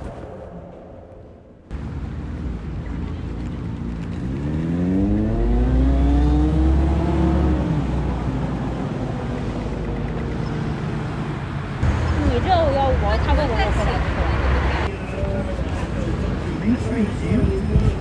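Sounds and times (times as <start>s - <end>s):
street traffic noise: 0.0s - 18.0s
vehicle engine accelerating: 1.7s - 14.9s.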